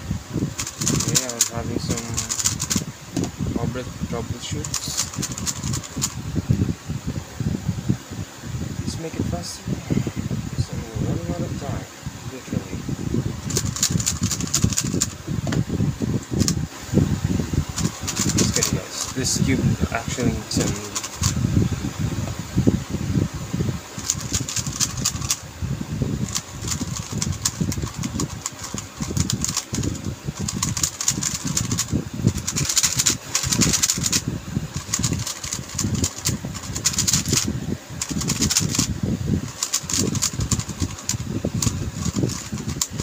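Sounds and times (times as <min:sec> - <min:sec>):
low rumbling handling noise: 0:00.0 - 0:43.0
speedcube clicking turns: 0:00.6 - 0:03.3, 0:04.6 - 0:06.2, 0:13.4 - 0:15.2, 0:17.8 - 0:19.4, 0:20.5 - 0:21.4, 0:24.0 - 0:25.4, 0:26.2 - 0:38.9, 0:39.5 - 0:43.0.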